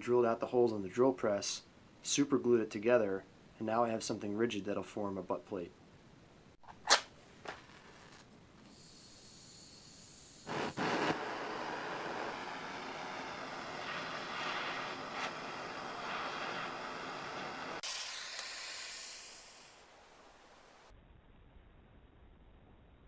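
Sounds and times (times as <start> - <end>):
high hiss of tool winding down: 8.7 - 20.8
electric power tool running: 10.4 - 19.8.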